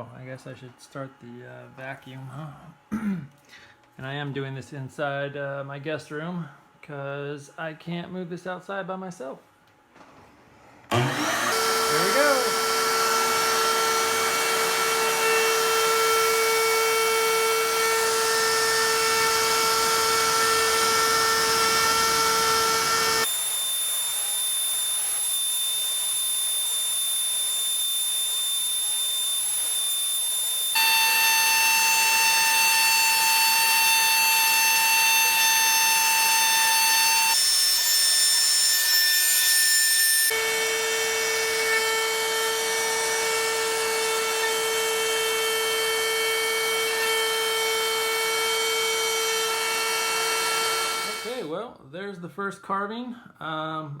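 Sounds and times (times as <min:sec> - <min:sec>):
vacuum running: 0:10.8 - 0:37.9, 0:38.7 - 0:51.5
router spindle whining: 0:10.9 - 0:51.5.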